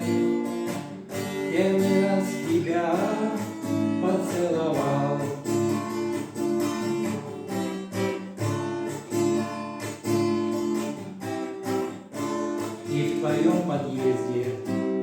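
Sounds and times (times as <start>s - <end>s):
man singing: 0.0s - 8.3s, 12.6s - 15.0s
acoustic guitar strumming: 0.0s - 15.0s.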